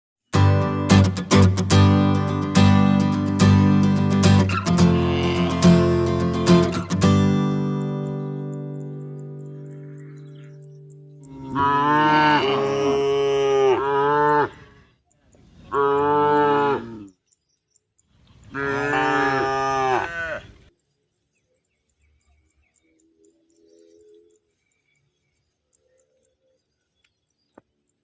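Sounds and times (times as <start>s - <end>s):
cow mooing: 4.6s - 6.0s, 11.2s - 14.9s, 15.7s - 17.1s, 18.5s - 20.5s.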